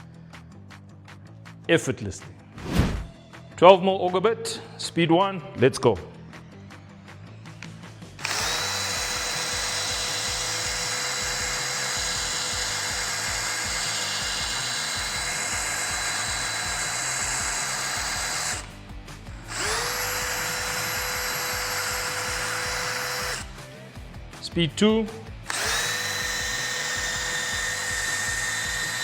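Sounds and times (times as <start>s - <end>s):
drill motor whine boring wood: 8.2s - 23.6s, 25.5s - 29.0s.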